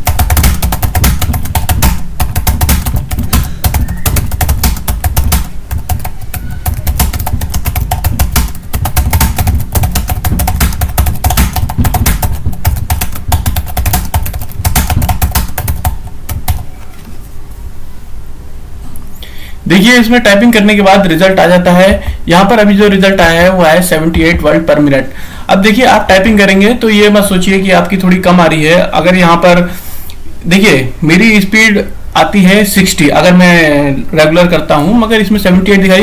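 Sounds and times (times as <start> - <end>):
rapid typing on computer keyboard: 0.0 - 16.8.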